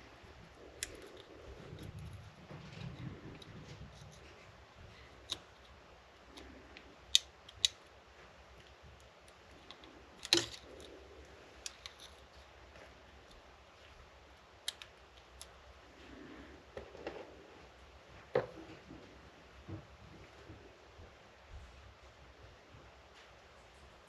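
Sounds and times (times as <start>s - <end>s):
small parts clicking and tapping: 0.5s - 13.5s, 14.4s - 15.6s.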